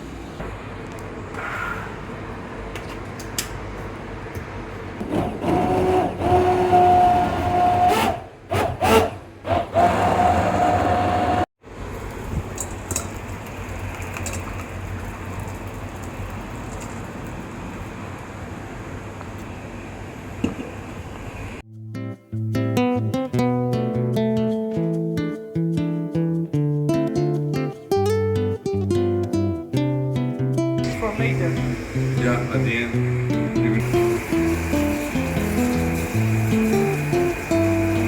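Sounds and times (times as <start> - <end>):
blender motor whining: 5.0 - 11.5, 30.9 - 38.0.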